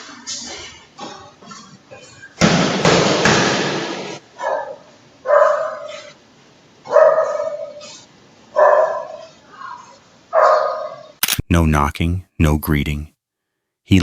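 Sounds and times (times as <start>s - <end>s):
dog barking: 4.4s - 6.2s, 6.8s - 11.2s.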